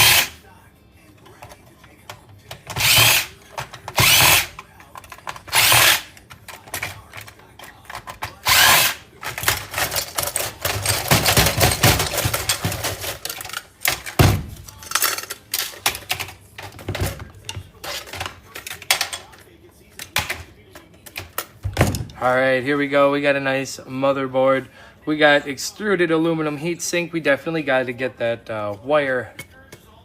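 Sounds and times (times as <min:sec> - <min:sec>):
cordless drill spinning: 0:00.0 - 0:00.3, 0:02.7 - 0:04.5, 0:05.5 - 0:06.1, 0:08.4 - 0:09.0
parts clicking and clattering: 0:01.2 - 0:22.2.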